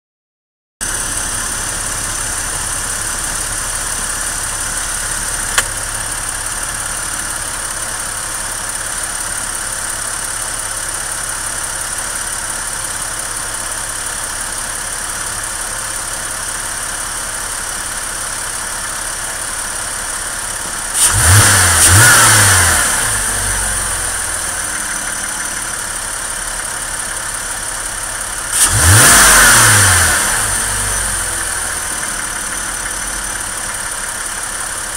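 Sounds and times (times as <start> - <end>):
car engine idling and revving: 0.8 - 34.9
sharp click: 5.5 - 5.8.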